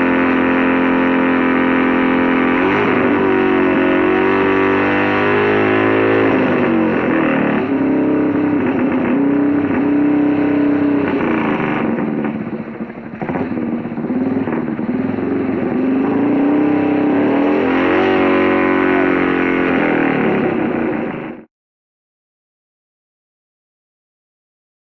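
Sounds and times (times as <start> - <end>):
motorcycle engine revving high: 0.0 - 21.5.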